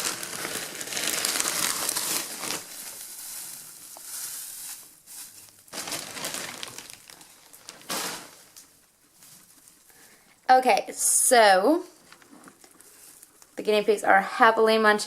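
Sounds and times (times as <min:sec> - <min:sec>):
dry hay rustling and crackling: 0:00.0 - 0:10.3.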